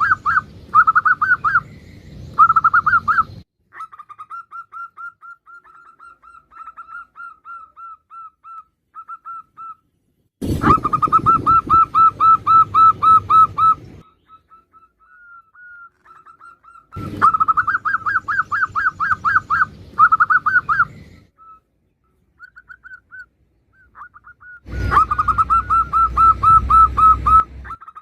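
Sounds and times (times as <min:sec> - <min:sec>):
dove cooing: 0:00.0 - 0:01.7, 0:10.5 - 0:21.6, 0:22.4 - 0:28.0.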